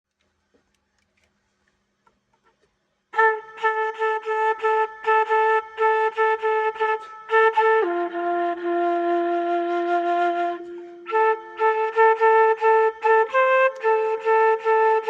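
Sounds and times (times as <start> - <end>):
wooden flute playing: 3.2 - 15.0.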